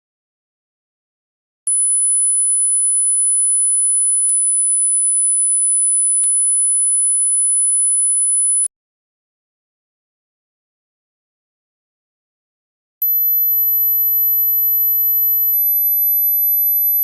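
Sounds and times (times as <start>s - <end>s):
high-pitched sine tone: 13.0s - 17.0s.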